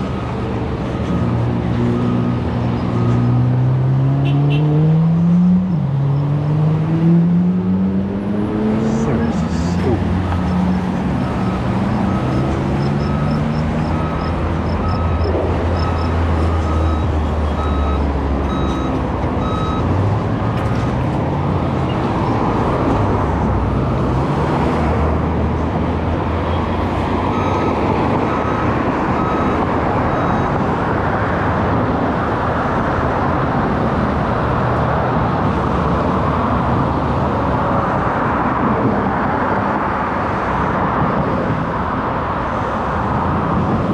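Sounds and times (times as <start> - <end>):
vehicle engine and tyre noise: 0.0 - 43.9
short beeps: 11.3 - 19.9.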